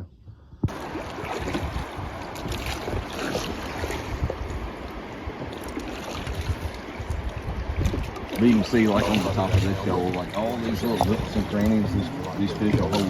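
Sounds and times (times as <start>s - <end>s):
wind buffeting microphone: 0.0s - 13.0s
river water rushing: 0.7s - 13.0s.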